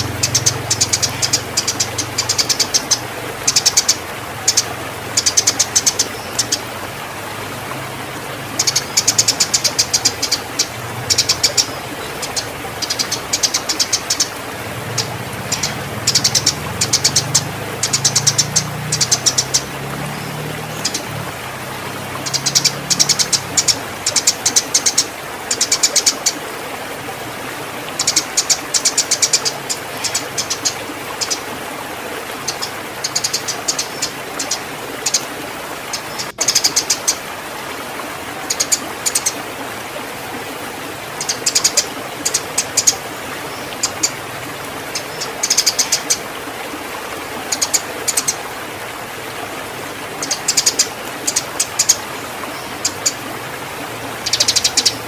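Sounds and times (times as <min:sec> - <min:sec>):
sparrows chirping: 0:00.0 - 0:06.7, 0:08.6 - 0:21.2, 0:22.1 - 0:26.3, 0:28.0 - 0:31.4, 0:32.4 - 0:35.3, 0:41.2 - 0:44.2, 0:44.9 - 0:46.2, 0:50.2 - 0:53.2, 0:54.2 - 0:55.0.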